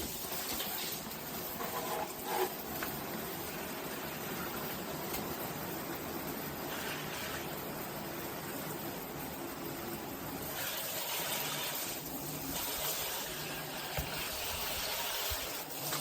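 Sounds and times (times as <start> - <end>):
water spraying from shower head: 0.0 - 8.9, 10.3 - 16.0.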